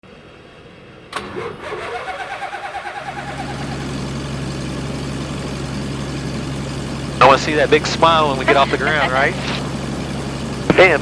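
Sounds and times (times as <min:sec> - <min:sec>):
aircraft engine idling: 0:00.0 - 0:11.0
starter motor cranking: 0:01.0 - 0:06.9.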